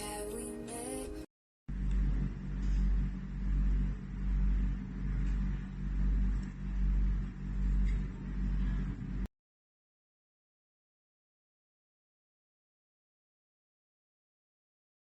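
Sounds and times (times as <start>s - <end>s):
loud deep rumble: 1.7s - 9.3s.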